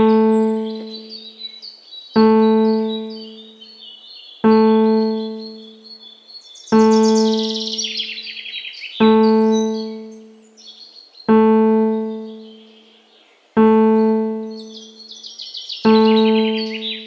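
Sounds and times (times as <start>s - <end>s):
low piano note ringing: 0.0s - 1.1s, 2.2s - 3.4s, 4.4s - 5.8s, 6.8s - 7.9s, 9.0s - 10.3s, 11.3s - 12.6s, 13.6s - 14.7s, 15.9s - 17.0s
small birds chirping: 0.0s - 17.0s.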